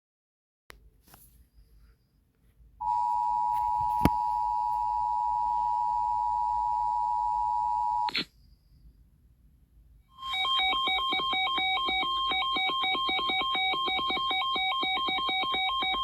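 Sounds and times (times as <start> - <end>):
two-tone alarm: 10.1 - 16.0.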